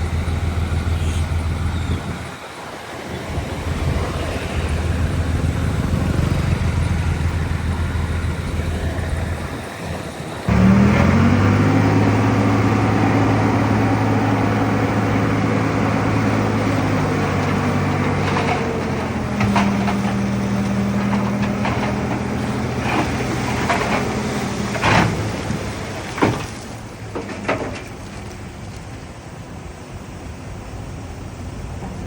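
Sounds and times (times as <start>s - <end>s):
heavy diesel engines under load: 0.0s - 32.0s
engine revving: 3.3s - 26.0s.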